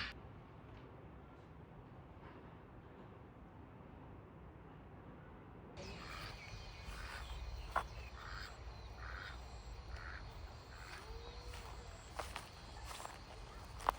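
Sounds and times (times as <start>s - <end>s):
duck quacking: 5.8s - 11.7s.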